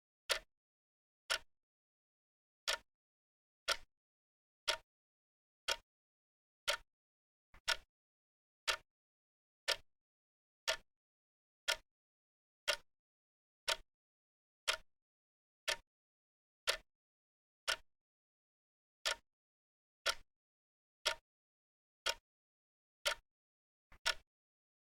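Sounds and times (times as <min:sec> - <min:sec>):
clock ticking: 0:03.7 - 0:03.9, 0:24.0 - 0:24.2.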